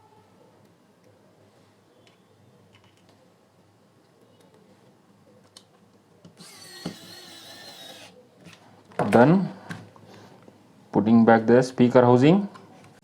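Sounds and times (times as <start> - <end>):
screws clicking into plastic: 6.4 - 8.2.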